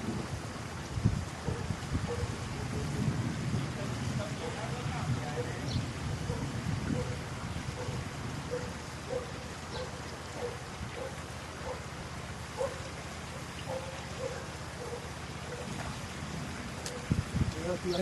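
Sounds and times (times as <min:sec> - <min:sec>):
wind noise: 0:00.0 - 0:09.8, 0:15.6 - 0:18.0.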